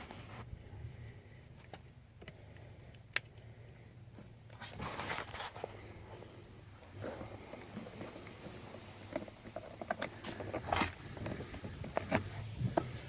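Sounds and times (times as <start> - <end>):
steady low hum: 0.0 - 13.0
scraping rustle: 4.5 - 6.2, 6.9 - 13.0.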